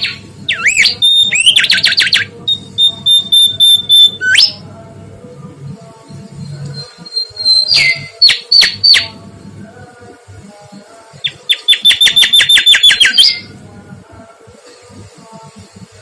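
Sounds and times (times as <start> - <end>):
bird singing whistled notes: 0.0 - 4.6, 6.4 - 9.1, 11.2 - 13.5.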